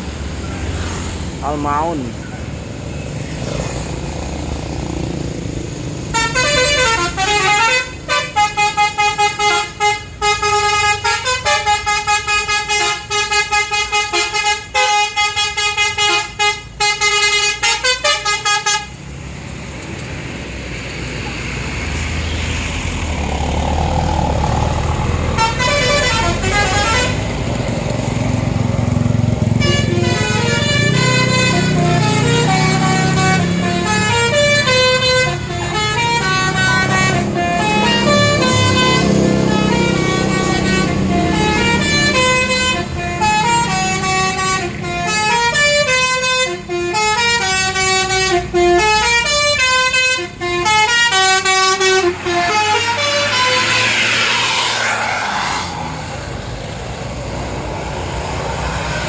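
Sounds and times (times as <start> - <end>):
bus engine noise: 0.0 - 59.0
bus musical horn tune: 6.1 - 19.0, 25.3 - 27.5, 29.4 - 54.8.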